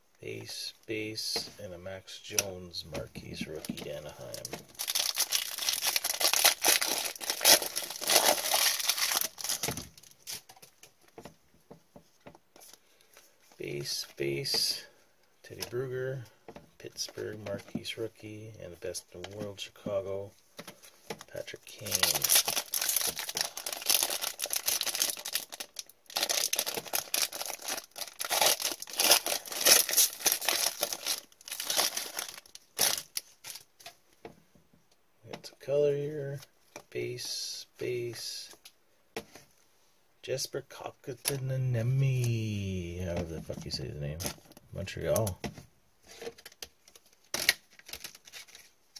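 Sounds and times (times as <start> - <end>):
foil wrapper crinkling: 4.2 - 10.7, 20.8 - 33.8, 46.0 - 48.8.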